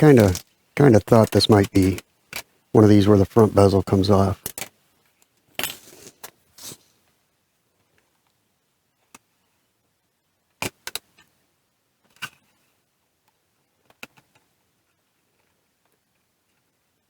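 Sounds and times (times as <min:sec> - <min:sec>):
plastic clicks and snaps: 0:00.1 - 0:02.5.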